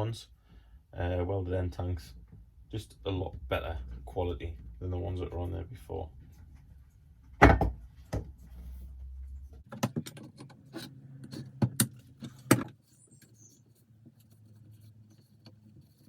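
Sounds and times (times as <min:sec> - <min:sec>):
loud knock: 0:07.4 - 0:07.8.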